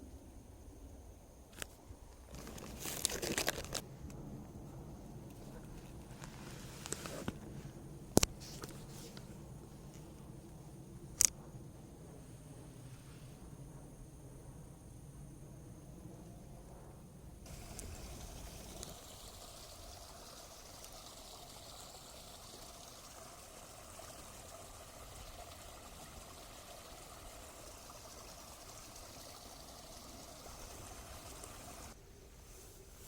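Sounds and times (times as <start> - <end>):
water rushing: 17.5 - 32.0.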